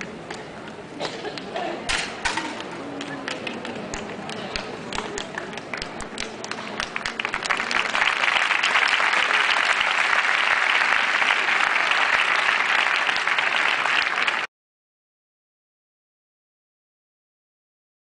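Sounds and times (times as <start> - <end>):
applause: 3.0 - 14.5.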